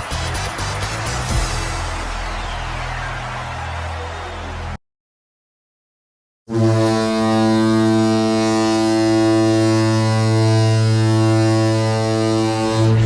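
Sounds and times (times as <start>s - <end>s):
arena goal horn blast: 6.5s - 13.0s.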